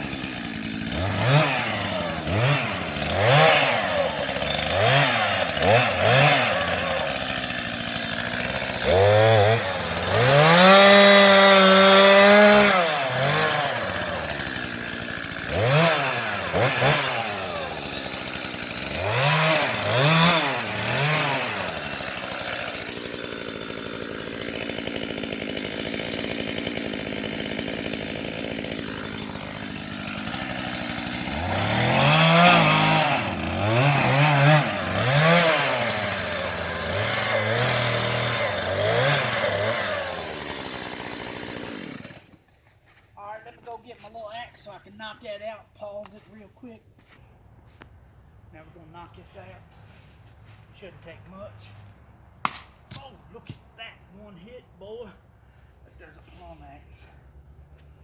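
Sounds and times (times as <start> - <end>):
chainsaw revving: 0.0 - 42.5.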